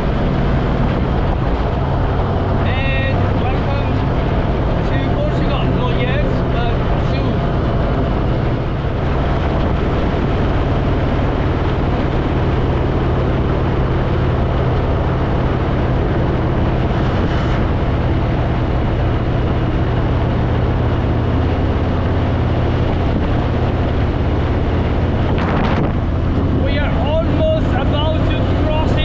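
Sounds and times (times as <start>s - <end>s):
motorcycle engine running: 0.0s - 29.0s
wind and road noise: 0.0s - 29.0s.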